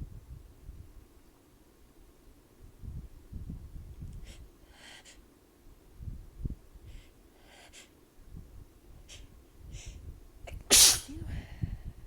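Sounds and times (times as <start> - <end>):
person breathing: 6.8 - 8.0
person sniffing: 10.7 - 11.2.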